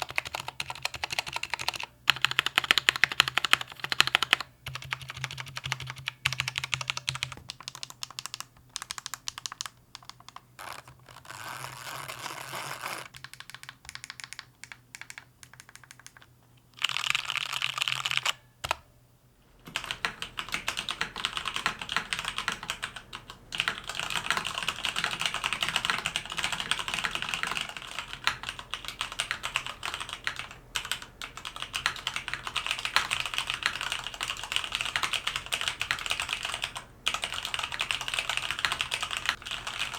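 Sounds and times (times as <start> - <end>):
mechanical keyboard typing: 0.0 - 11.0, 13.1 - 18.8, 19.6 - 39.9
faint hum: 14.4 - 39.9.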